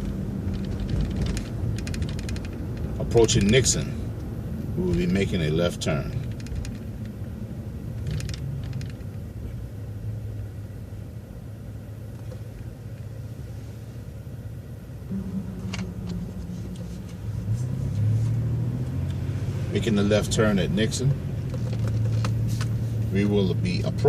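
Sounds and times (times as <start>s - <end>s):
faint rattles: 0.0s - 4.0s, 6.0s - 7.2s
bus engine and road rumble: 0.0s - 24.0s.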